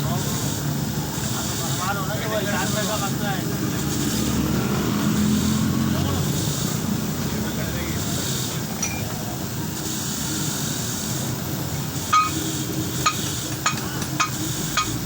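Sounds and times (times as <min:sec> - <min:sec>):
metal tool striking metal: 0:08.8 - 0:09.2, 0:12.1 - 0:12.4.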